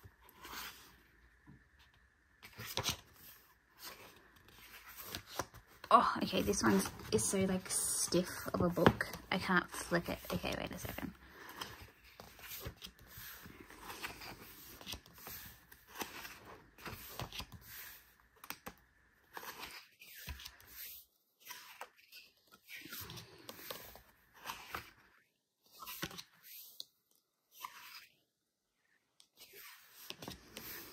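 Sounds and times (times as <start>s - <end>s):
paper rustling and crinkling: 2.4s - 18.7s.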